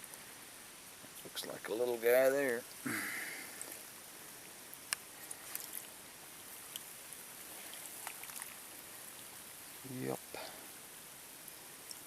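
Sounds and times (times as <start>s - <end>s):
faint outdoor hiss: 0.0s - 12.0s
light ticks: 11.5s - 12.0s.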